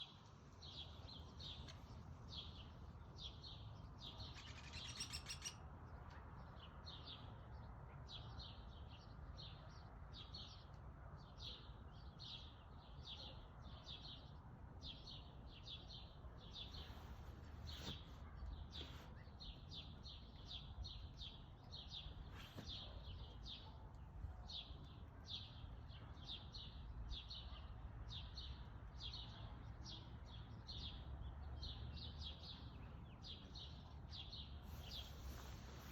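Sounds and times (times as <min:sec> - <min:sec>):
woodpecker pik calls: 0:04.3 - 0:05.6.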